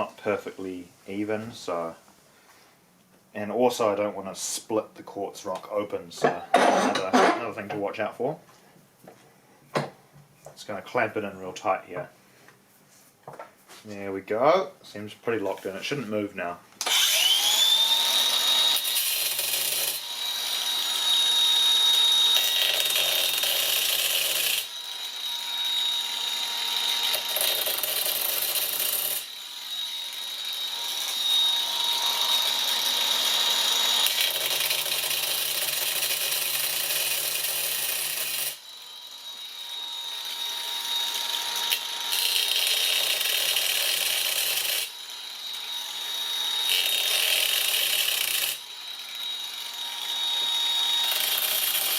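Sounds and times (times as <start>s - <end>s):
grinder motor whining: 16.8s - 23.4s, 44.4s - 51.9s
grinder bit grinding stone: 16.8s - 51.9s.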